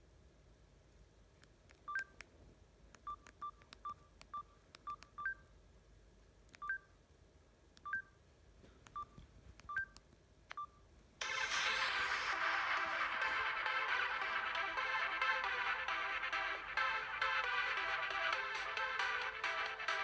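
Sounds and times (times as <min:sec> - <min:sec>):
phone key-press beeps: 0:03.0 - 0:05.4, 0:06.5 - 0:06.9, 0:08.9 - 0:10.8.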